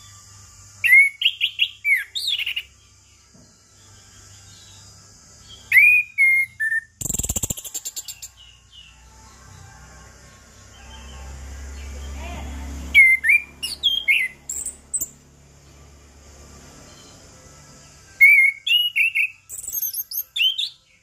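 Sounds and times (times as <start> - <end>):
thrush singing whistled notes: 0.0 - 2.9, 3.8 - 9.0, 12.8 - 15.2, 16.9 - 21.0
steady high-pitched hiss: 0.0 - 8.9
bird harsh rattle: 7.0 - 8.2.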